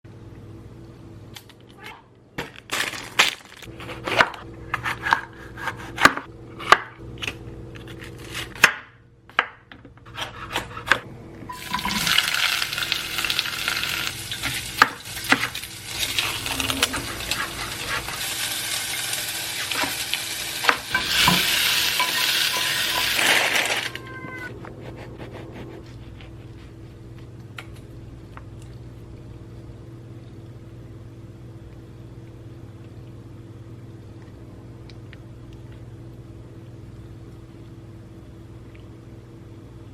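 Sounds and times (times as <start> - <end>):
steady low hum: 3.6 - 39.9
utensils clinking and knocking: 20.7 - 24.1.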